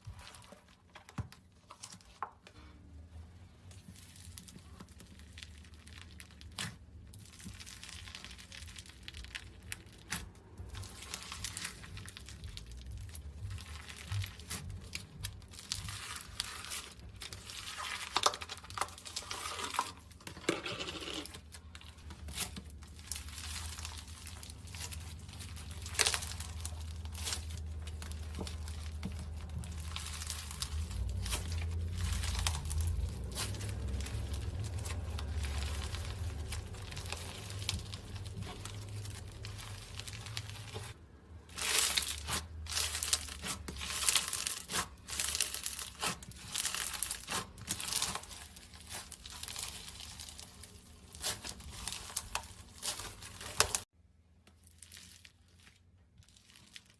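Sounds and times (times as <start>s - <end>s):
slime crackling in hands: 3.4s - 20.3s, 21.3s - 53.8s, 54.4s - 56.9s.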